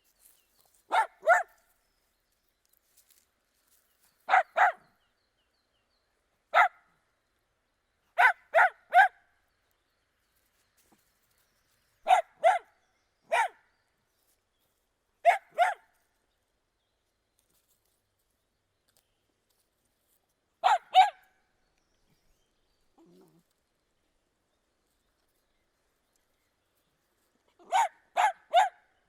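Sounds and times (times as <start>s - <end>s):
dog barking: 0.9s - 1.6s, 4.3s - 4.8s, 6.5s - 6.8s, 8.2s - 9.2s, 12.1s - 12.7s, 13.3s - 13.6s, 15.2s - 15.9s, 20.6s - 21.3s, 27.6s - 28.9s.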